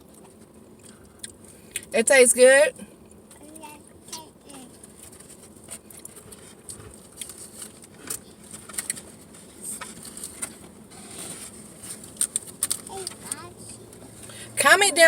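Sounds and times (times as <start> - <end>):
chewing and food handling clicks: 0.0 - 1.9.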